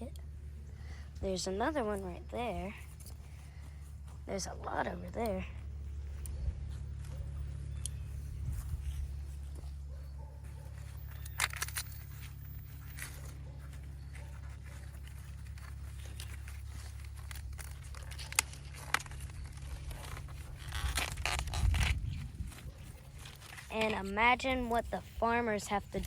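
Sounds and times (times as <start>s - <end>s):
dry corn stalks rustling: 0.0s - 26.0s
steady low rumble: 0.0s - 26.0s
corn ears snapping off stalks: 11.1s - 13.4s, 15.1s - 24.0s.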